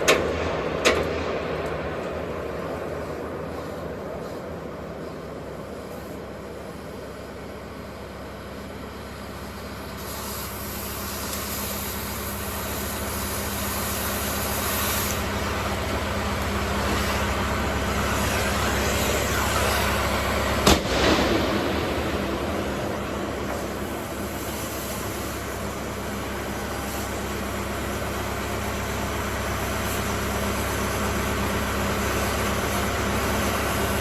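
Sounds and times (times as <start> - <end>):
cutting torch hissing: 9.4 - 34.0
sharp bang: 20.4 - 25.8.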